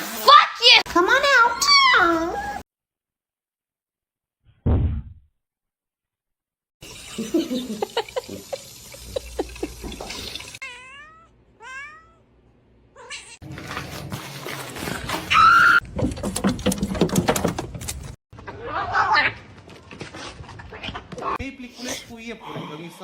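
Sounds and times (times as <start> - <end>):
brief thump: 4.6 - 5.2
cat meowing: 10.6 - 12.2.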